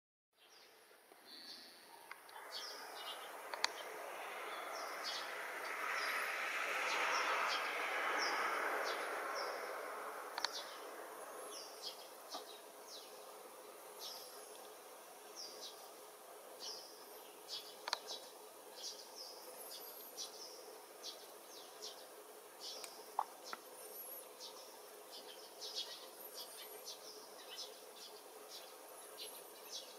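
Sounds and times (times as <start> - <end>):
small birds chirping: 0.4 - 29.9
broad rushing noise: 2.4 - 13.9
sharp clicks: 10.4 - 10.6.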